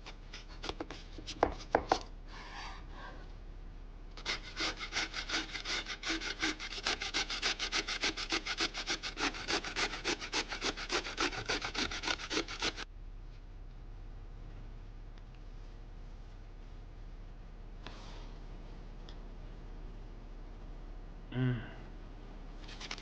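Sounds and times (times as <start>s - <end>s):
knife rasping through vegetable: 4.2s - 12.8s.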